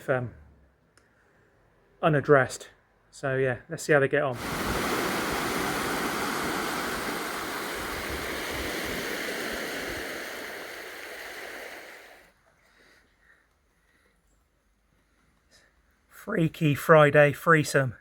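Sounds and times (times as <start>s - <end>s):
river water rushing: 4.4s - 12.2s.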